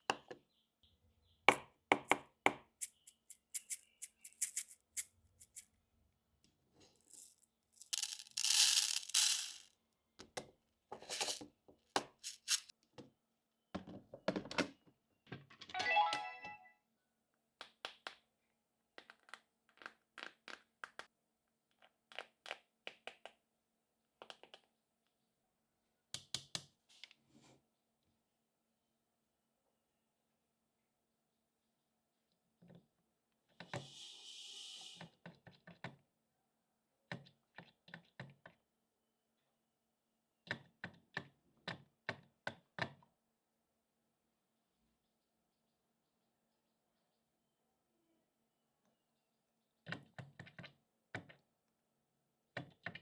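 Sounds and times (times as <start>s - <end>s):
plastic toy pieces clicking: 2.8s - 5.6s, 7.1s - 9.7s, 11.1s - 11.4s, 12.2s - 12.7s
packaging crinkling: 7.1s - 9.6s, 12.2s - 12.7s.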